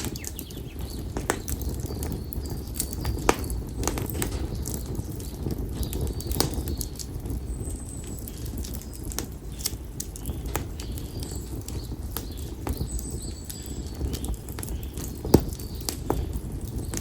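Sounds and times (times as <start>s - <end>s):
high bird whistle: 0.0s - 1.0s
firewood crackling and popping: 0.0s - 17.0s
low rumble of flames: 0.0s - 17.0s.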